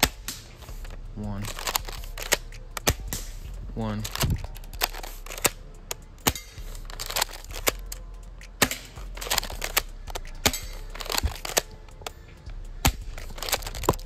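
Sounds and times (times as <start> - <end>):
spring shotgun pumping and firing: 1.5 - 3.4, 4.1 - 12.1.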